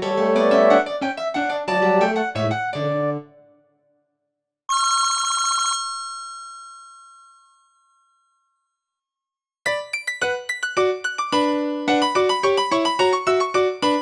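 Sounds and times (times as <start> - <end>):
phone ringtone bell trilling: 4.7 - 8.5.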